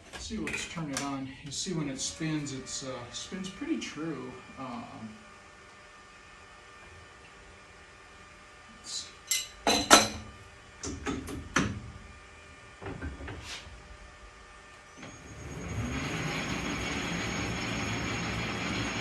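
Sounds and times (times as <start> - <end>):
metal lathe spinning with high whine: 1.5 - 8.7, 14.4 - 19.0.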